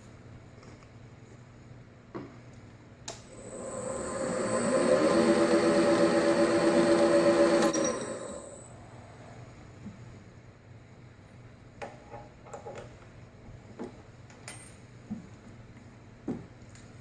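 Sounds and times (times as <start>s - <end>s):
low hum: 3.3s - 9.5s.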